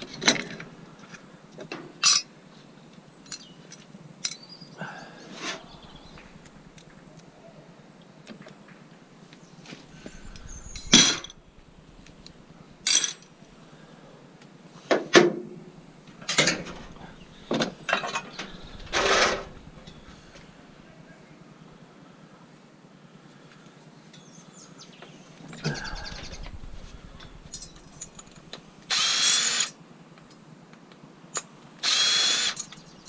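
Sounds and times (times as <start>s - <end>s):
scrap metal clanking: 16.2s - 20.5s.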